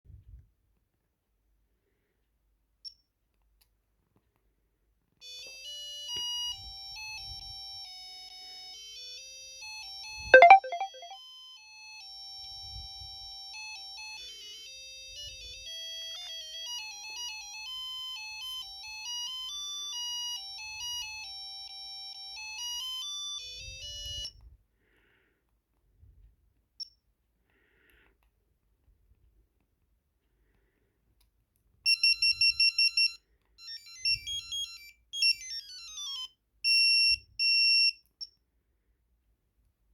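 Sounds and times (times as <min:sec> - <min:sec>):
pager beeping alert melody: 0:10.4 - 0:11.2.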